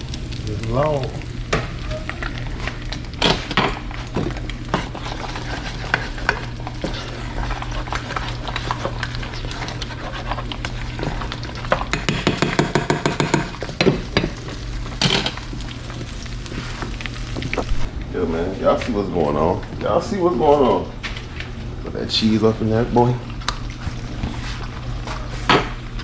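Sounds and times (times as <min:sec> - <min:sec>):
food sizzling in oil: 0:00.0 - 0:17.9
steady low hum: 0:00.0 - 0:26.0.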